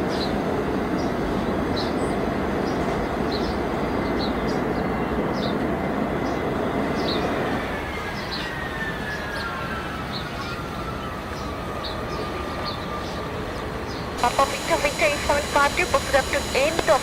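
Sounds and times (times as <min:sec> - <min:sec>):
falling whine: 0:14.2 - 0:17.0
jet engines roaring: 0:14.2 - 0:17.0.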